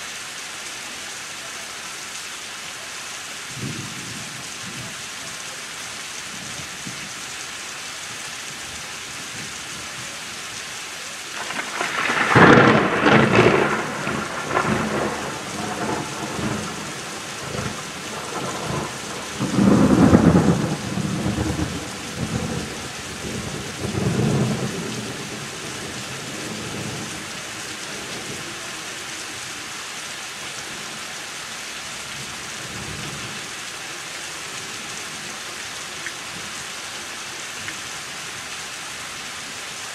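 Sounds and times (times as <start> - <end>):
heavy rain: 0.0 - 39.9
thunder rumbling: 11.4 - 28.7.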